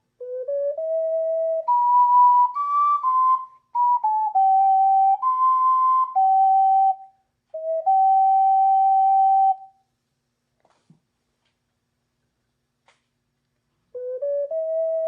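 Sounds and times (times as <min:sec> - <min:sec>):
ocarina melody: 0:00.0 - 0:09.8, 0:13.9 - 0:15.0.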